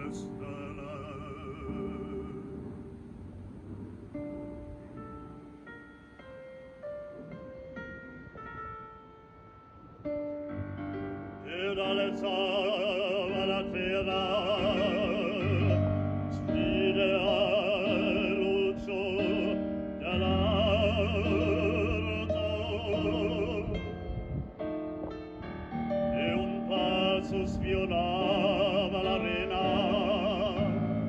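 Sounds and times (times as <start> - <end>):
operatic voice singing: 0.0 - 2.8, 11.5 - 24.0, 26.2 - 31.0
piano accompaniment: 0.0 - 31.0.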